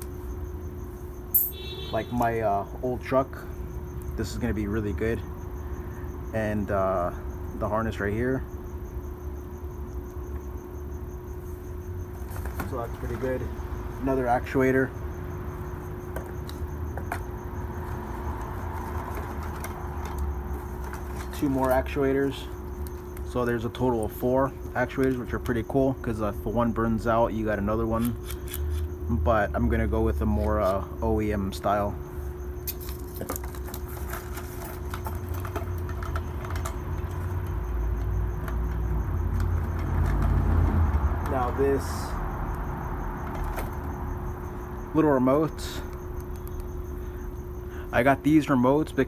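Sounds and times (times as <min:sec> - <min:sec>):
steady low hum: 0:00.0 - 0:49.0
plastic parts clicking and knocking: 0:32.7 - 0:40.4.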